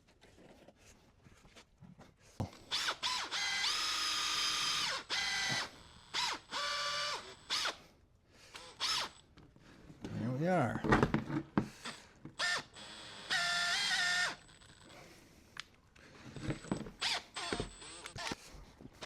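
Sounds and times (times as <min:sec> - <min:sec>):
power drill spinning: 0:02.6 - 0:07.9, 0:08.5 - 0:09.2, 0:11.7 - 0:15.2, 0:16.2 - 0:19.0.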